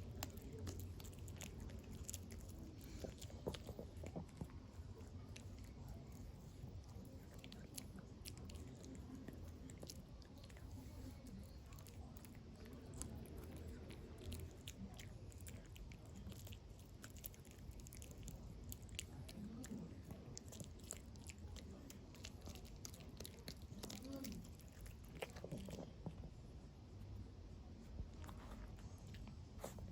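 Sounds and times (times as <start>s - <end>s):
dog chewing wetly: 0.0s - 26.3s
teeth clicking on chew: 11.4s - 25.9s.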